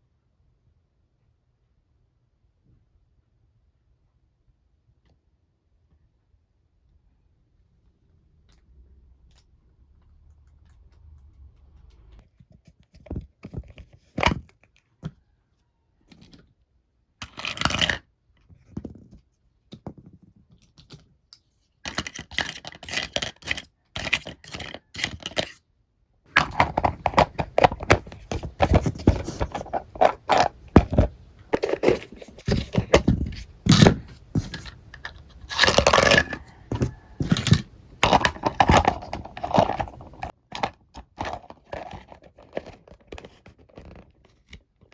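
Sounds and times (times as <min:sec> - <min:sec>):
plastic toy pieces clicking: 0:21.9 - 0:25.6, 0:34.5 - 0:44.0
packaging rustling and tearing: 0:26.4 - 0:44.4.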